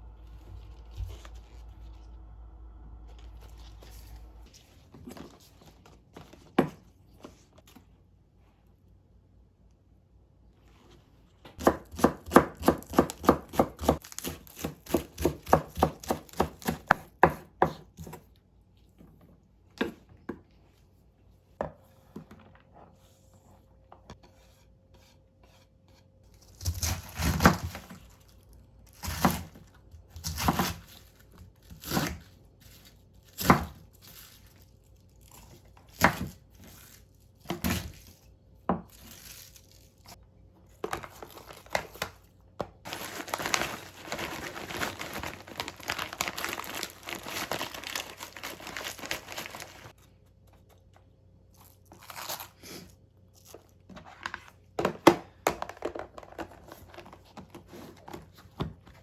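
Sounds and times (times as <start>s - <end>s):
knife chopping on cutting board: 11.6s - 18.2s.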